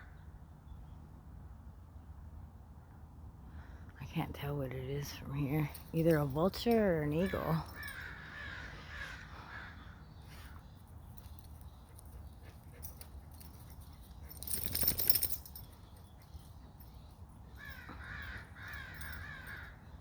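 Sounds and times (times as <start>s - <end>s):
crows cawing: 7.2s - 10.1s, 17.6s - 19.9s.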